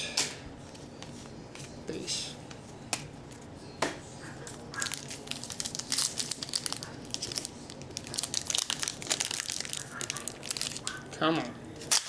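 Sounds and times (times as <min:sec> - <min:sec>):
wrapper tearing and crinkling: 0:04.8 - 0:11.0.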